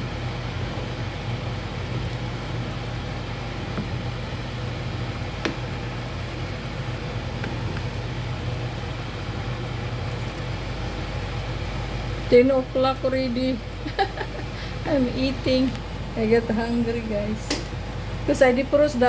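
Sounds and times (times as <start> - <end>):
microwave oven humming: 0.0 - 19.0.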